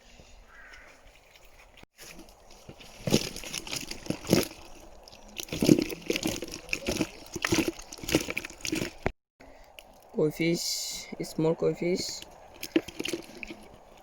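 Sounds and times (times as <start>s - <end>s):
water sloshing and splashing: 1.2s - 9.2s, 12.2s - 14.0s.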